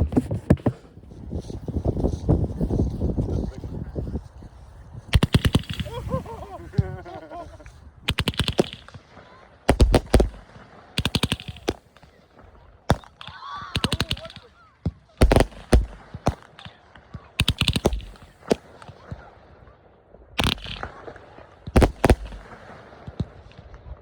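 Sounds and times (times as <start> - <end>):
fireworks shots and bursts: 5.0 - 24.0
rapid firework pops: 5.1 - 19.4, 20.4 - 24.0.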